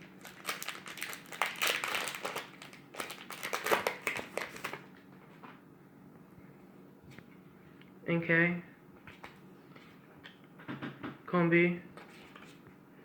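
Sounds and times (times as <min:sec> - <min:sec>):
foil wrapper tearing and crinkling: 0:00.0 - 0:04.8.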